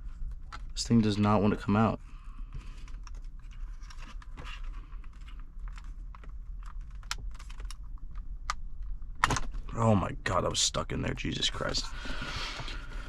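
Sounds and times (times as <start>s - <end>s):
plastic clicks and rattles: 2.9s - 9.6s.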